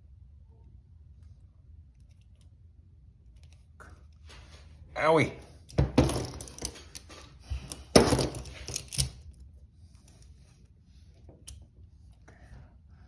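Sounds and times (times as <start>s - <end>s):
handcuffs and keys rattling: 5.9s - 9.2s.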